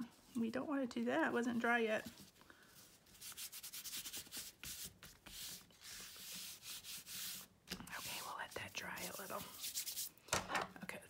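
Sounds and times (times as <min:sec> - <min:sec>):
hands rubbing paper: 0:02.0 - 0:10.2.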